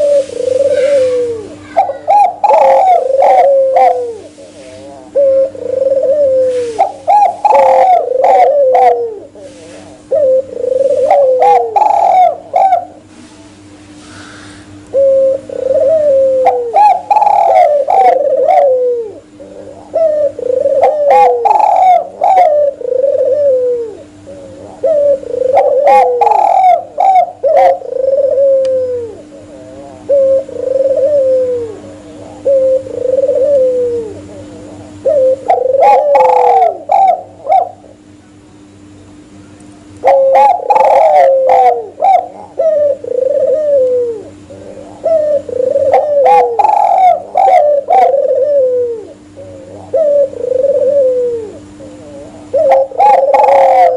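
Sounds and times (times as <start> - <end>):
doves cooing: 0.0 - 53.9
steady low hum: 0.0 - 53.9.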